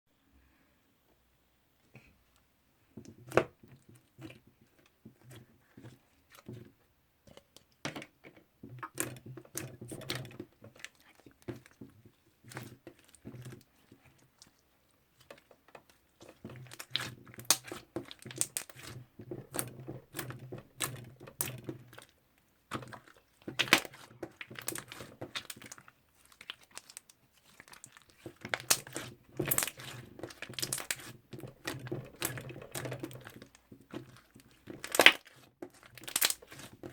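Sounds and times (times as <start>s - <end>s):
slime crackling and clicking: 16.8s - 18.9s, 23.0s - 36.8s.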